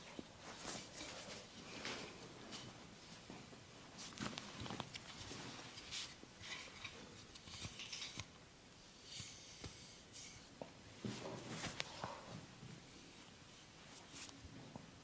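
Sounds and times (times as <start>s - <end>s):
hands rubbing skin and hair: 13.9s - 14.4s.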